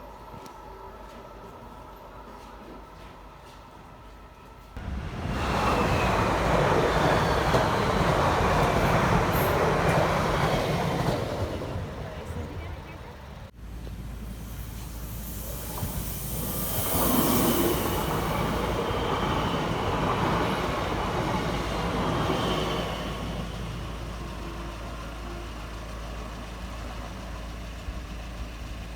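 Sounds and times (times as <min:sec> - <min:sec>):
train wheels rumbling on rail: 0:00.0 - 0:28.9
brief high hiss: 0:14.2 - 0:19.2.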